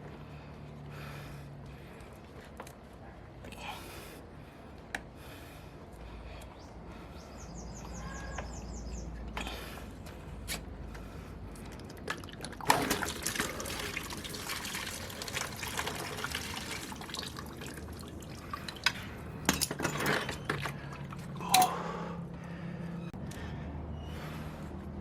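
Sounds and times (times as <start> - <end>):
coolant pouring and dripping: 11.6 - 21.4.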